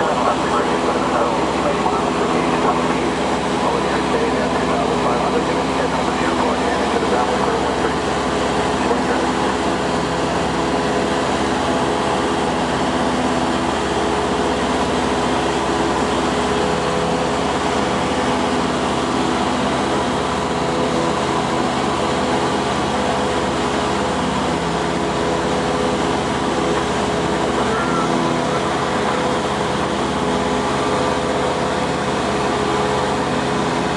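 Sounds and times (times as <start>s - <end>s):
light aircraft engine from cabin: 0.0s - 33.9s.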